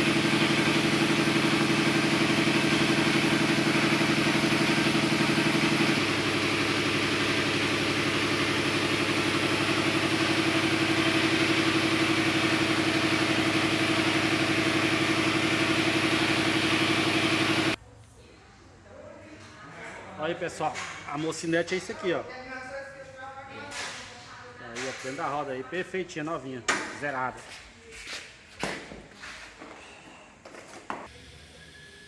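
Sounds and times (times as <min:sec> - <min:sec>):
motor humming: 0:00.0 - 0:17.8.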